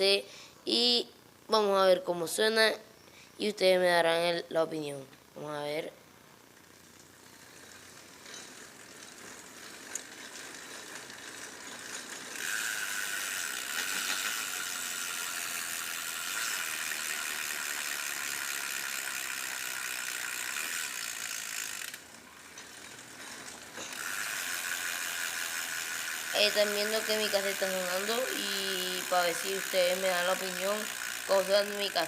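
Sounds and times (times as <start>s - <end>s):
bicycle freehub ratcheting: 6.4s - 32.0s.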